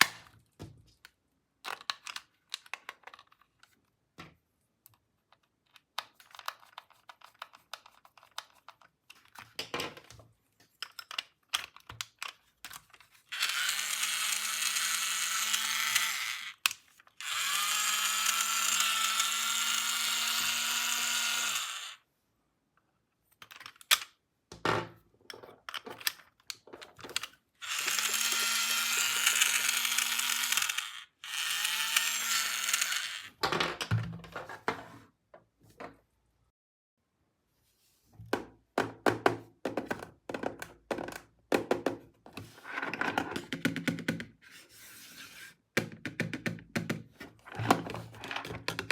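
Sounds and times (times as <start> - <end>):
plastic parts clicking: 1.6 - 3.8, 10.8 - 22.0, 23.4 - 24.2, 25.3 - 33.5
toy screwdriver motor whirring: 13.3 - 22.0, 27.2 - 33.3.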